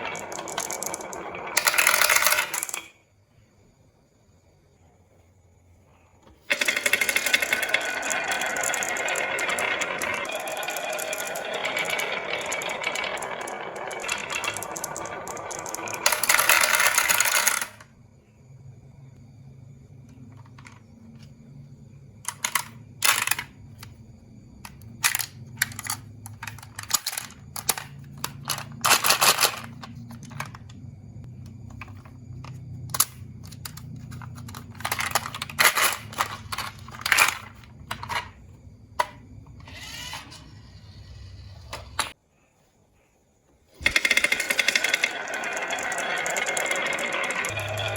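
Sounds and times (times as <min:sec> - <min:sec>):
marbles rattling down wooden run: 0:00.0 - 0:02.8, 0:06.5 - 0:17.8, 0:43.8 - 0:47.9
marbles clacking on wood: 0:00.0 - 0:02.9, 0:06.5 - 0:17.8, 0:43.8 - 0:47.9.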